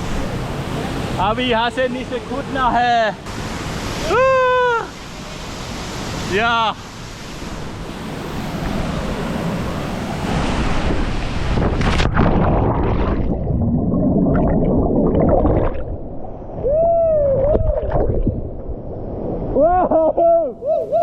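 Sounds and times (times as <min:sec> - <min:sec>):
wind noise: 0:07.3 - 0:19.8
underwater churning and bubbling: 0:10.7 - 0:16.6, 0:17.3 - 0:19.6
splash into water: 0:11.5 - 0:16.1.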